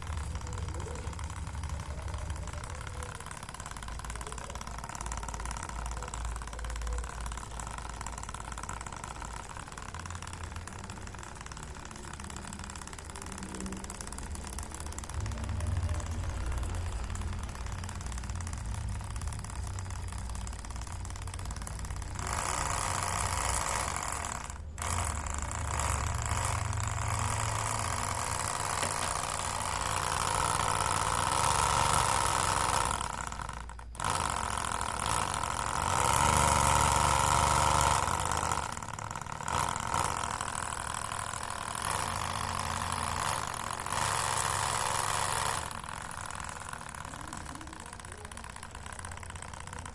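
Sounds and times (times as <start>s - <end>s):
model engine hum and rattle: 0.0s - 49.9s.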